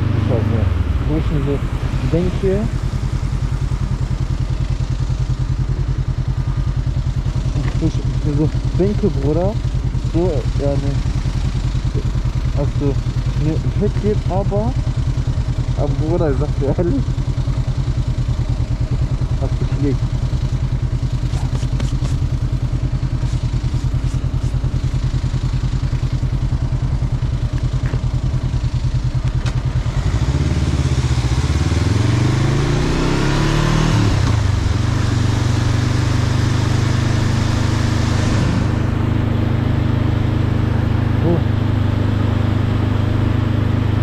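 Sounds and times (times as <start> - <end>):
motorcycle engine: 0.0 - 44.0
rushing hiss of speed: 23.1 - 24.7.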